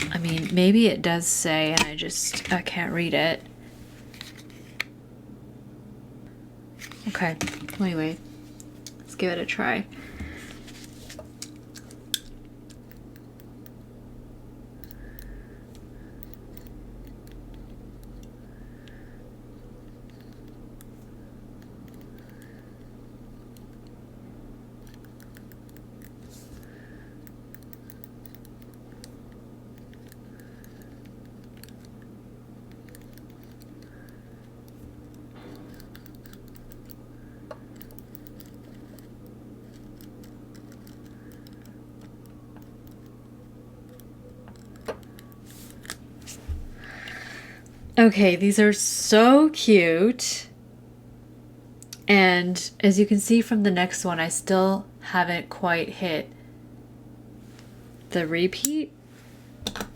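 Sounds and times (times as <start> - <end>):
roller tape clicks and rustles: 0.0 - 0.8
steady low hum: 0.0 - 59.9.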